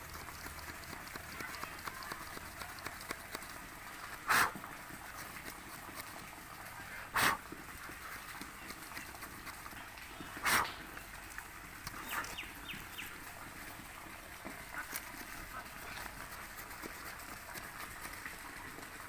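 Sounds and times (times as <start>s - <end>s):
small saw cutting branch: 0.1s - 6.3s, 7.2s - 10.8s, 11.4s - 13.7s, 14.3s - 19.0s.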